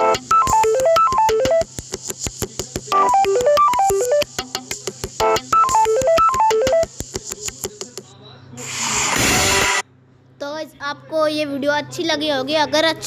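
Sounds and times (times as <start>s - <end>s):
synthesized ringtone melody: 0.0s - 1.7s, 3.0s - 4.4s, 5.2s - 6.9s
fast ticking beat: 0.0s - 8.1s.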